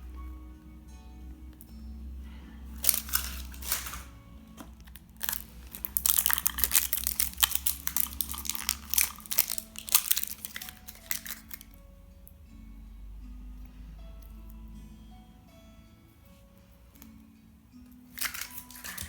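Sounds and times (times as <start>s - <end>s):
plastic packaging crinkling: 2.8s - 11.8s, 18.1s - 19.0s.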